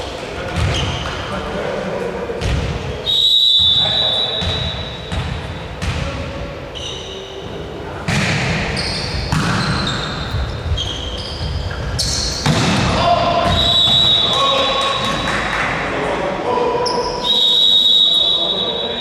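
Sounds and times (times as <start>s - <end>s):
sneakers squeaking: 0.0s - 1.4s, 2.4s - 15.4s, 16.8s - 19.0s
basketball bouncing on court: 0.5s - 1.1s, 4.4s - 6.2s, 8.1s - 14.2s.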